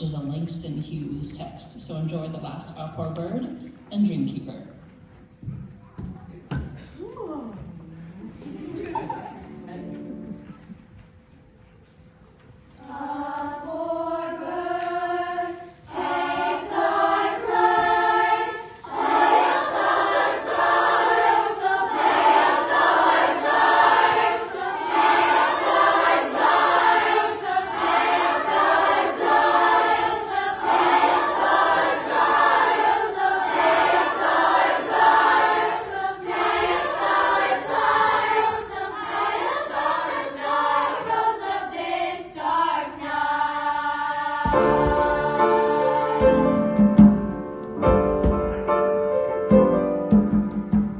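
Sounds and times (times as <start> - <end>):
chorus singing a cappella: 12.8 - 47.5.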